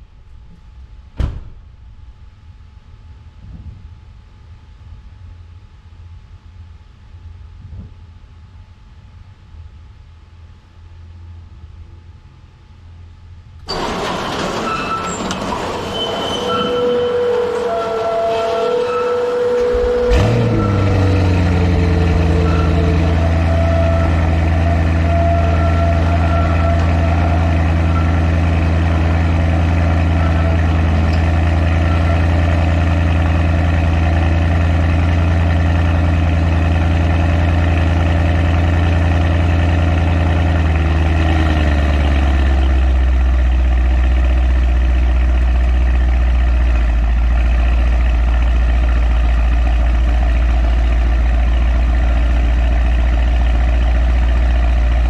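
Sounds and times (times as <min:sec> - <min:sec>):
car engine idling: 0:16.7 - 0:55.0.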